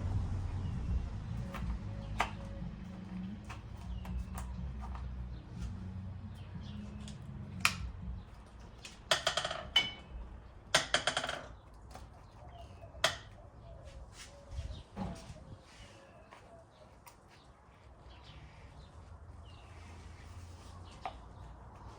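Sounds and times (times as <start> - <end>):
low hum: 0.0 - 8.9.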